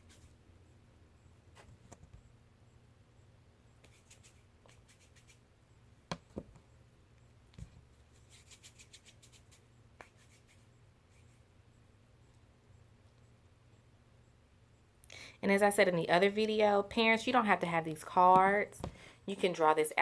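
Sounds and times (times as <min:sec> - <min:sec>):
hands rubbing modelling clay: 0:03.8 - 0:05.4, 0:07.6 - 0:11.5.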